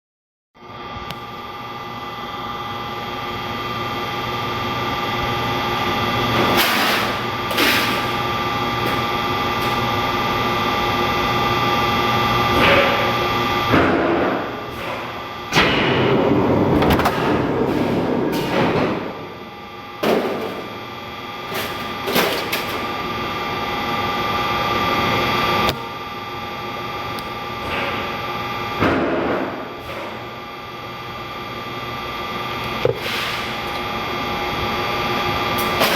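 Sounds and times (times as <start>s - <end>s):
press machine humming: 15.4s - 20.7s.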